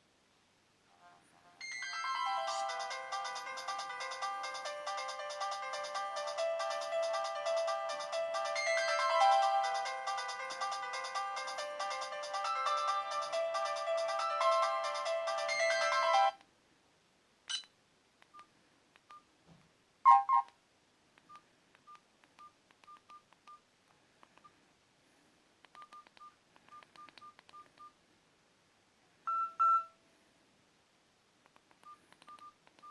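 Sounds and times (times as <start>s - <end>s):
polyphonic phone ringtone: 1.6s - 16.4s, 29.3s - 29.9s
keypad beeps: 17.5s - 17.7s, 20.1s - 20.5s, 21.3s - 23.6s, 25.7s - 28.0s, 29.3s - 30.0s, 31.8s - 32.9s
long phone beep: 29.3s - 30.0s.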